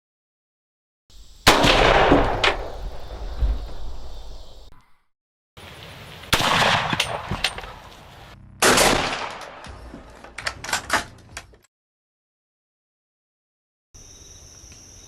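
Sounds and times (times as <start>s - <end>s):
gunshots: 1.5s - 3.0s, 6.3s - 7.9s, 8.6s - 9.7s.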